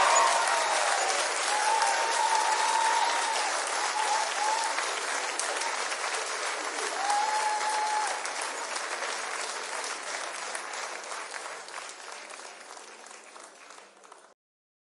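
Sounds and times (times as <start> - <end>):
long whistle from crowd: 0.0 - 3.2
audience applauding: 0.0 - 14.4.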